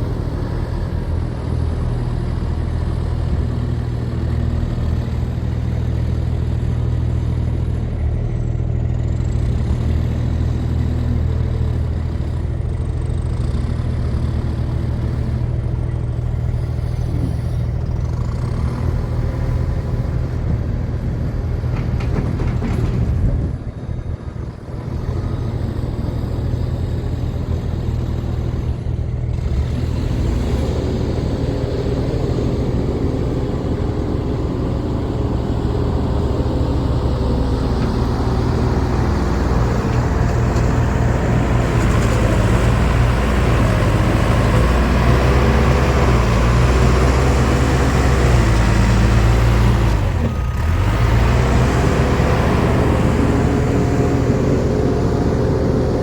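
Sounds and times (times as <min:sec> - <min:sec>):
diesel engine running: 0:00.0 - 0:56.0
dirt being loaded: 0:29.5 - 0:56.0.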